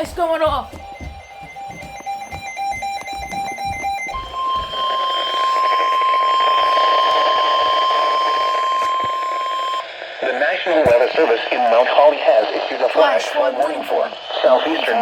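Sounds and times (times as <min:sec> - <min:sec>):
single-pitch warning alarm tone: 0:00.0 - 0:10.2
buzzy data tones: 0:00.0 - 0:15.0
radio hiss: 0:04.9 - 0:15.0.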